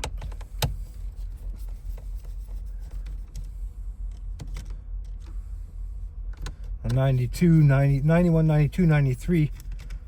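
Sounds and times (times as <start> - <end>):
light ticks and rubbing: 0.0 - 7.9.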